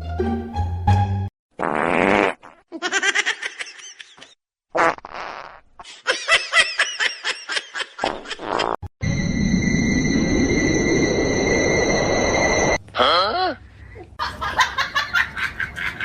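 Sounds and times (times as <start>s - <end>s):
sputtering fart-like bursts: 1.6s - 2.6s, 4.7s - 5.6s, 8.0s - 8.9s.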